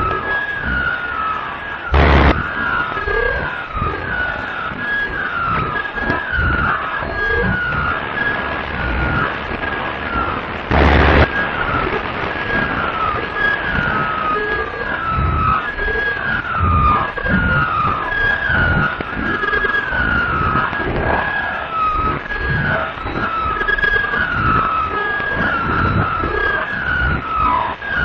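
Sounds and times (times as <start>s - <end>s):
siren-like tone sliding down: 0.0s - 28.0s
rough low rumble: 1.9s - 2.5s, 10.7s - 11.3s
burst of static noise: 1.9s - 2.6s, 7.9s - 13.5s.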